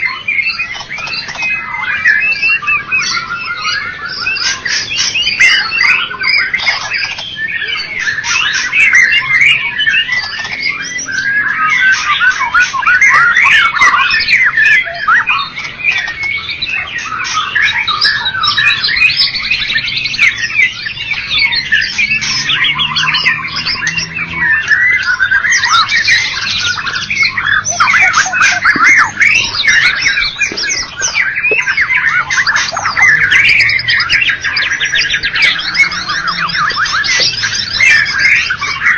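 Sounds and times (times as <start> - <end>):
bird singing whistles and trills: 0.0 - 38.9.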